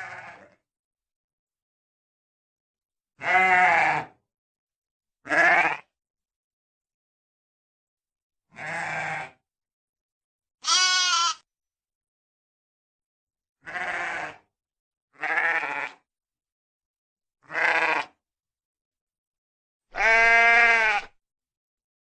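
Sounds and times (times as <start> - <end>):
sheep bleating: 0.0 - 0.6, 3.2 - 4.2, 5.2 - 5.9, 8.5 - 9.4, 10.6 - 11.5, 13.6 - 14.5, 15.2 - 16.0, 17.4 - 18.2, 19.9 - 21.2.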